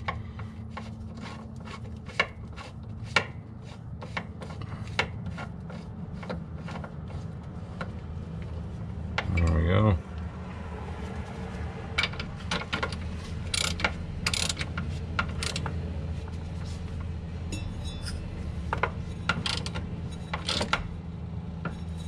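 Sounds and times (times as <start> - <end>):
steady low hum: 0.0 - 22.0
ratchet wrench clicking: 12.8 - 15.7, 19.3 - 20.9
metal tool clinks: 17.5 - 18.3.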